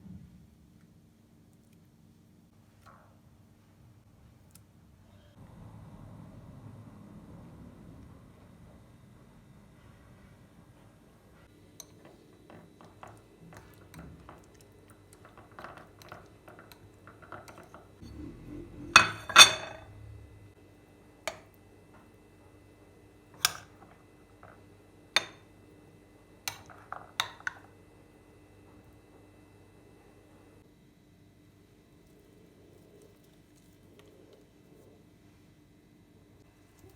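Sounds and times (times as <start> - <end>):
dishes and cutlery clinking: 15.2 - 19.9
dishes clattering: 15.2 - 20.0.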